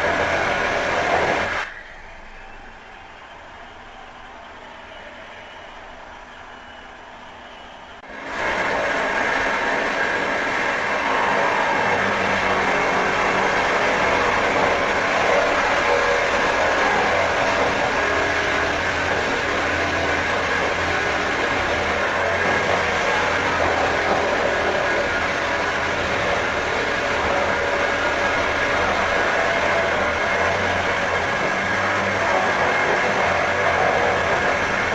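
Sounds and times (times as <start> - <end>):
power drill running: 8.1 - 34.9.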